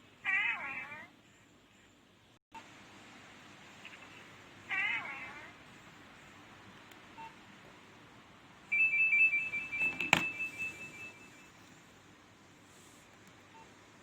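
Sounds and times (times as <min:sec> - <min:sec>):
phone ringtone beeps: 0:08.7 - 0:11.6.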